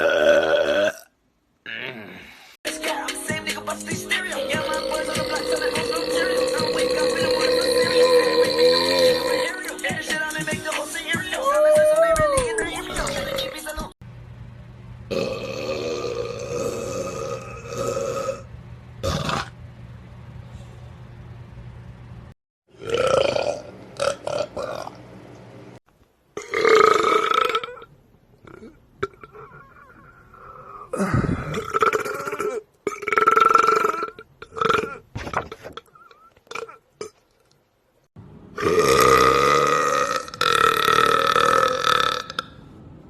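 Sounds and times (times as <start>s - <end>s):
person burping: 0.0s - 2.3s, 4.4s - 9.6s, 15.1s - 19.6s, 22.7s - 25.0s, 26.4s - 37.2s, 38.6s - 42.6s.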